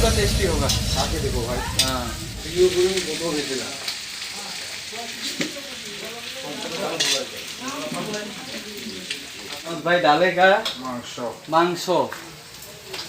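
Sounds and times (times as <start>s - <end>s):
food sizzling in hot oil: 0.0s - 13.0s.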